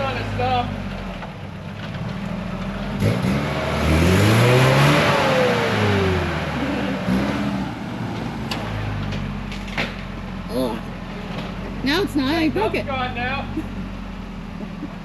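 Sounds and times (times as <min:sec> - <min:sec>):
off-road engine revving: 0:00.0 - 0:15.0.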